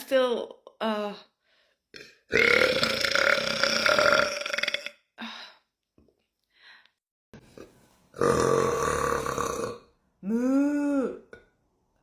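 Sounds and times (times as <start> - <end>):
woman burping: 8.2 - 11.4.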